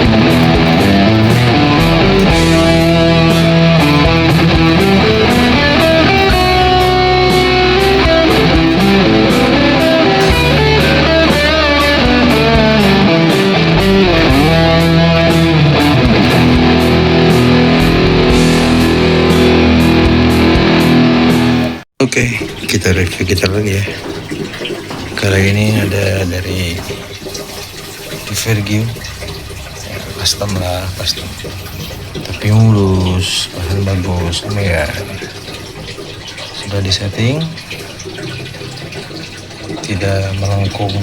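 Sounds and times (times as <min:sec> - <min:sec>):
backing track with steady beat: 0:00.0 - 0:21.7
bass line: 0:00.0 - 0:21.8
electric guitar lead lines: 0:00.0 - 0:21.8.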